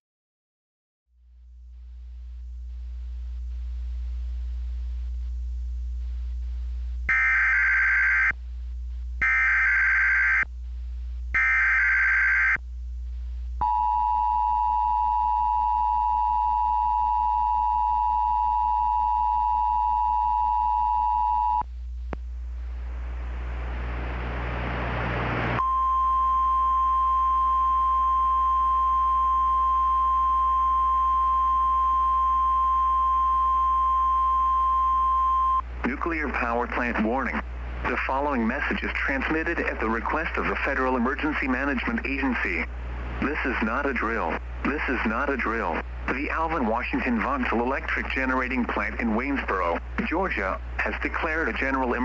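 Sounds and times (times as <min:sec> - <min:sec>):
low hum: 0:12.6 - 0:50.0.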